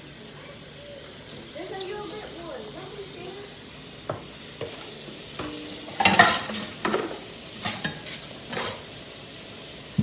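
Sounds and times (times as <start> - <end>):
chicken wings sizzling in oil: 0.0 - 10.0
kitchen clatters: 4.1 - 9.0.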